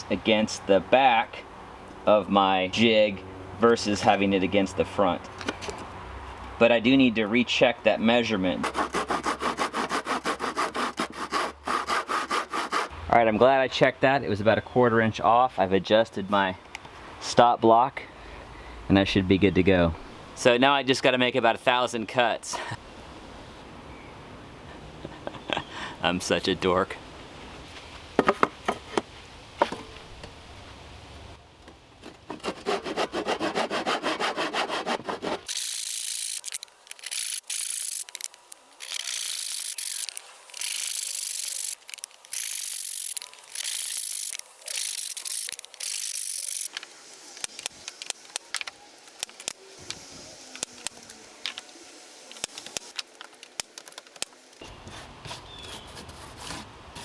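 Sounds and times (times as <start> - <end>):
saw cutting wood: 8.6 - 12.9, 32.0 - 46.8.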